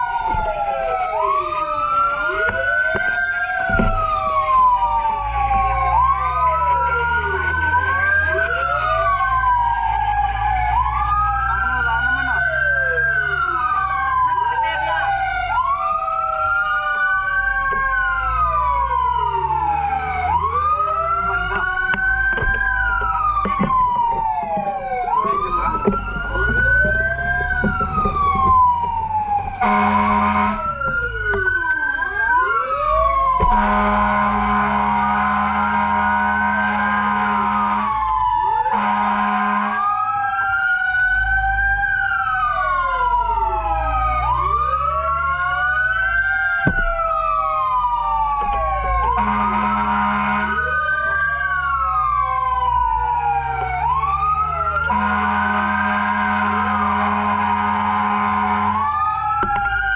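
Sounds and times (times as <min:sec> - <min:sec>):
emergency vehicle sirens wailing: 0:00.0 - 0:59.9
horn blasts: 0:29.6 - 0:30.7, 0:33.4 - 0:38.0, 0:38.7 - 0:39.9, 0:49.1 - 0:50.8, 0:54.8 - 0:59.0.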